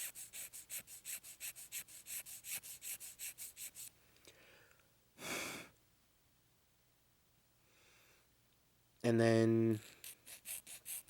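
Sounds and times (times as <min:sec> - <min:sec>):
file rasping on plastic: 0:00.0 - 0:03.9, 0:09.8 - 0:11.0.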